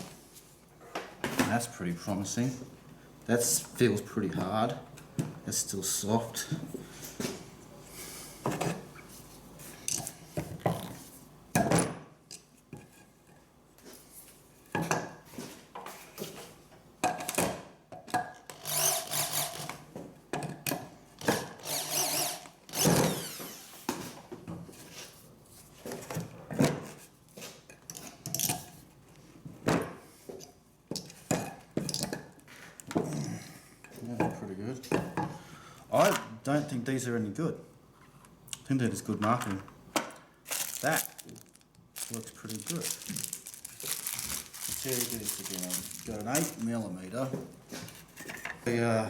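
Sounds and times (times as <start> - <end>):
drilling into concrete block: 18.5 - 19.8, 21.2 - 23.8.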